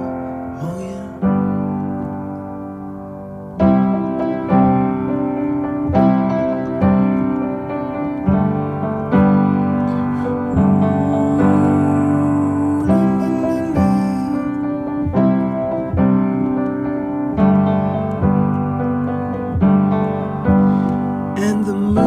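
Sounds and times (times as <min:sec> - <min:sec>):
piano chords: 0:00.0 - 0:22.0.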